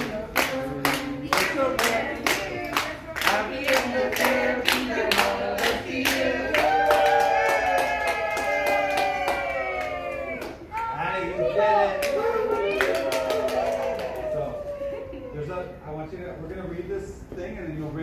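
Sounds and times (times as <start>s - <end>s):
group singing: 0.0s - 8.4s.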